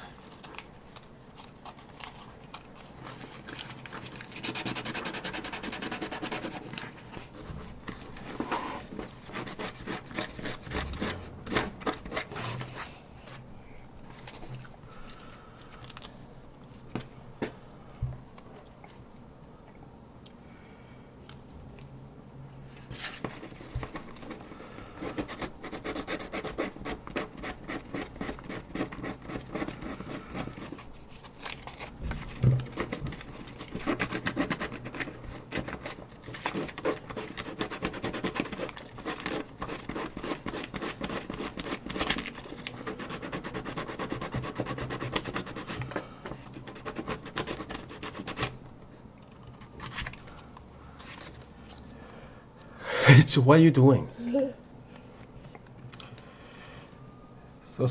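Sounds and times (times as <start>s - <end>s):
sandpaper rubbing on plastic: 4.0s - 6.8s, 8.2s - 12.8s, 32.7s - 45.8s, 46.6s - 48.5s.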